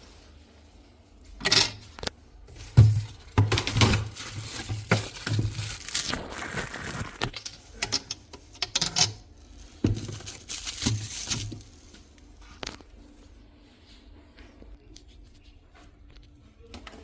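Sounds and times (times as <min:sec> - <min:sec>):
plastic parts clicking and crinkling: 0:01.3 - 0:12.9.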